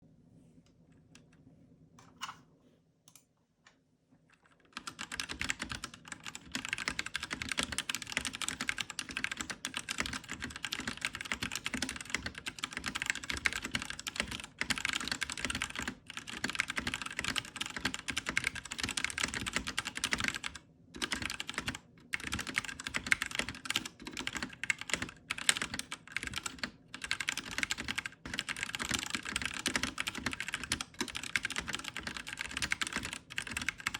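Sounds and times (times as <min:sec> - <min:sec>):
mechanical keyboard typing: 0:04.4 - 0:33.9.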